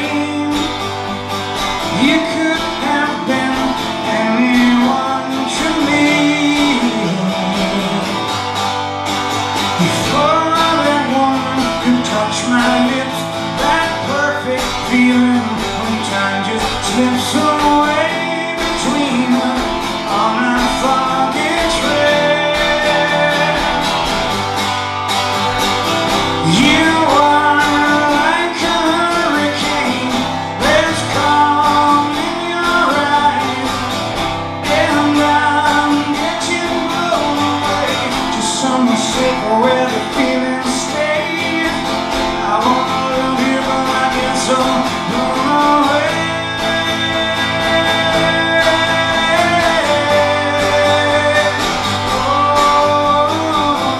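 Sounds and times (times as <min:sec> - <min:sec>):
lead guitar bending notes: 0:00.0 - 0:53.9
live band playing: 0:00.0 - 0:53.9.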